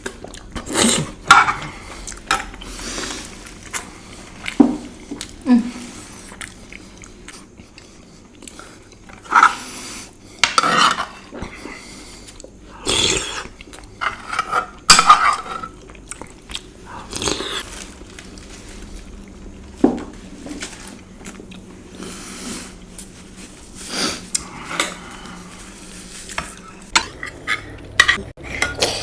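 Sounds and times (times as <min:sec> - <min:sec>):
cutlery clinking and scraping on dish: 0:14.0 - 0:15.7.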